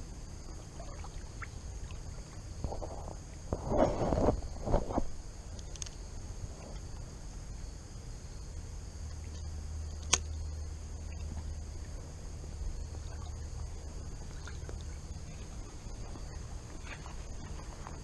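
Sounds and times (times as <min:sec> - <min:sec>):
high buzz of insects: 0:00.0 - 0:18.0
sharp click: 0:10.0 - 0:10.4.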